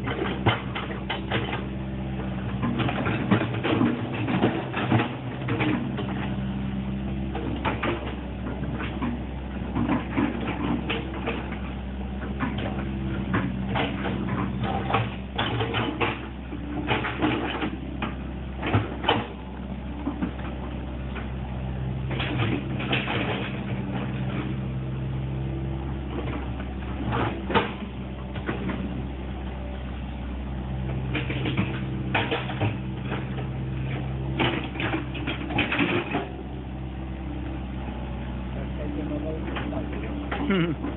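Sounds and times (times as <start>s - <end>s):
sharp clunks and knocks: 0.0s - 1.7s, 2.5s - 6.4s, 7.3s - 19.4s, 20.0s - 20.7s, 22.1s - 24.5s, 26.1s - 29.0s, 31.0s - 36.3s
excavator diesel hum: 0.0s - 40.9s.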